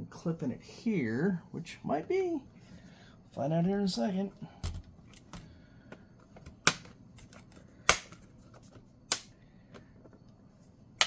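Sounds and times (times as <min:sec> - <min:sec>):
plastic case snapping open: 0:06.4 - 0:08.2.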